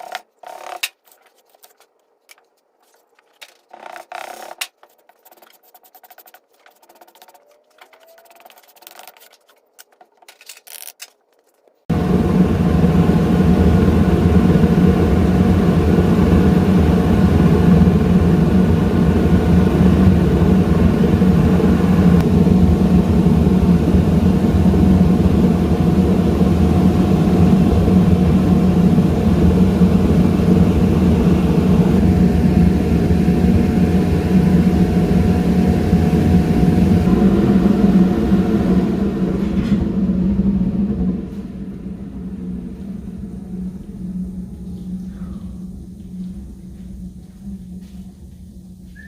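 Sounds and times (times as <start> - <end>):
furnace blower roaring: 0.0 - 11.1, 11.9 - 49.0
constant low hum: 0.0 - 49.0.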